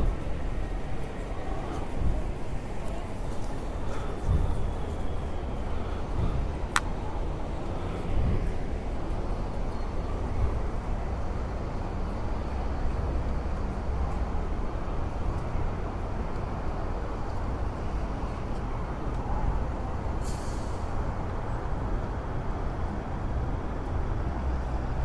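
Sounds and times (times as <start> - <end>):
train rumbling: 0.0 - 25.0.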